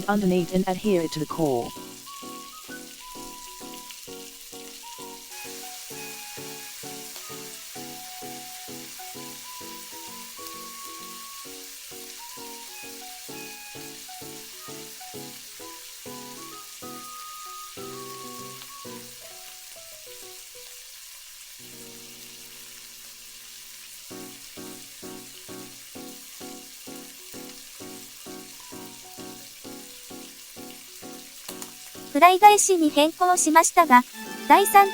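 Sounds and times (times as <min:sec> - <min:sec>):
background music: 0:00.0 - 0:19.7, 0:24.2 - 0:34.9
egg sizzling in hot oil: 0:00.0 - 0:34.9.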